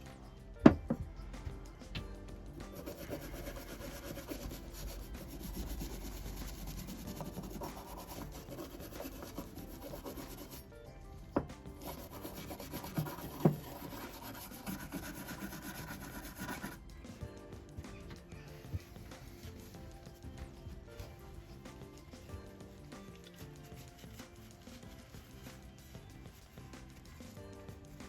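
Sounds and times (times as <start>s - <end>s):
scrubbing bicycle parts: 2.6s - 10.6s, 11.8s - 17.2s.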